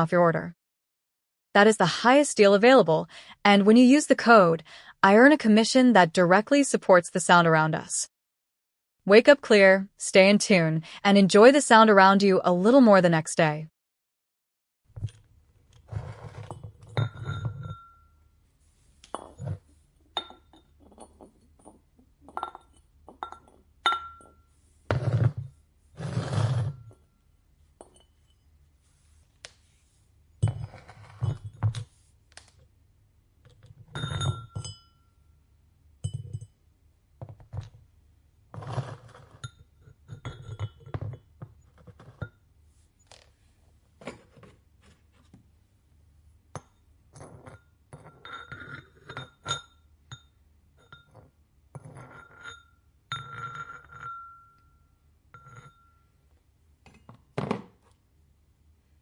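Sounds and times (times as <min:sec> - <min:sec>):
ceramic knocks and clinks: 0:16.2 - 0:18.1, 0:19.0 - 0:25.5, 0:27.8 - 0:28.4, 0:30.4 - 0:31.8, 0:33.5 - 0:35.1, 0:36.0 - 0:36.6, 0:39.2 - 0:42.4, 0:46.6 - 0:56.0.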